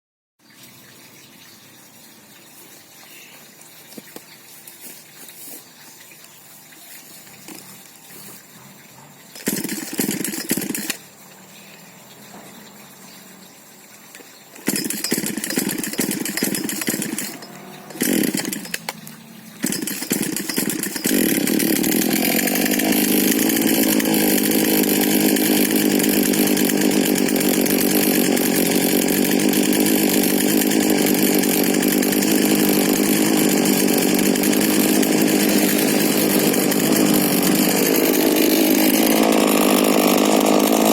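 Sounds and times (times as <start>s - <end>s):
chainsaw engine starting and running: 7.4s - 7.7s, 9.3s - 11.6s, 14.6s - 40.9s.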